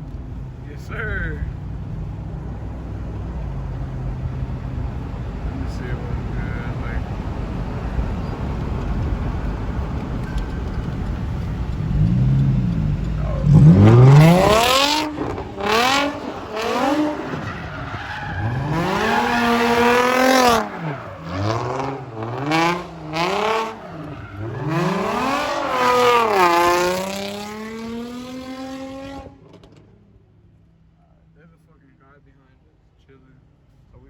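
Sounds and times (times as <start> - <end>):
tyres skidding: 0.0 - 30.5
car engine revving hard: 11.2 - 29.6.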